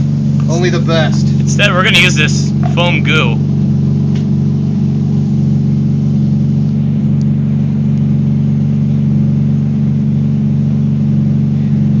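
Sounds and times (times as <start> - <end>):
car engine idling: 0.0 - 12.0.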